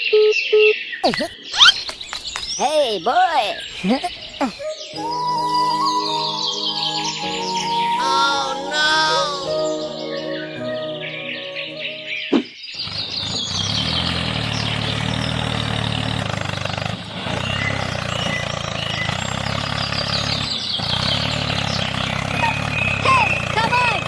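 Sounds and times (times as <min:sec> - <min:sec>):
birds chirping: 0:00.8 - 0:24.0
small engine running: 0:12.8 - 0:24.0.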